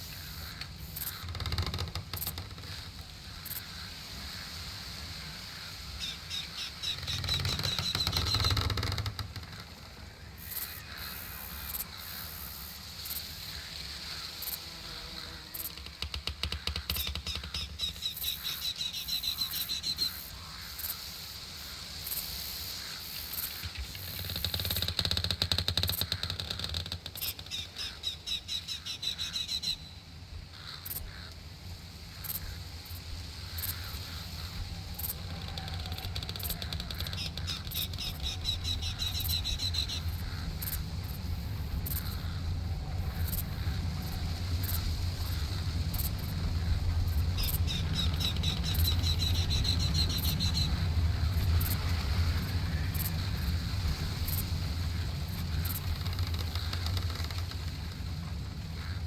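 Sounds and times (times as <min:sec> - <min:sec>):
steady low rumble: 0:31.8 - 0:59.0.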